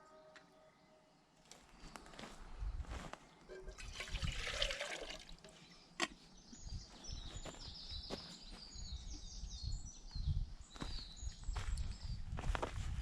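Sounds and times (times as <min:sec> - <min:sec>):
water pouring: 0:03.5 - 0:05.6
small bird singing: 0:05.5 - 0:12.7.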